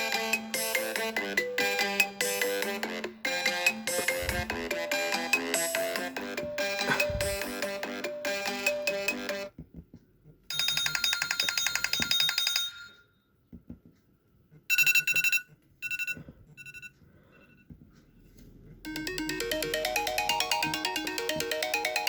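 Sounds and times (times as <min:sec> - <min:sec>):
melodic ringtone: 0:00.0 - 0:09.5, 0:18.9 - 0:22.0
phone ringtones: 0:10.5 - 0:13.1, 0:14.7 - 0:17.6, 0:18.9 - 0:22.0.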